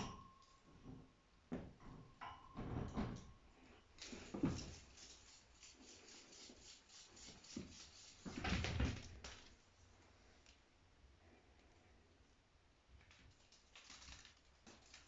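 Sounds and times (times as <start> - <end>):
cat rubbing and scuffing: 4.0 - 9.6.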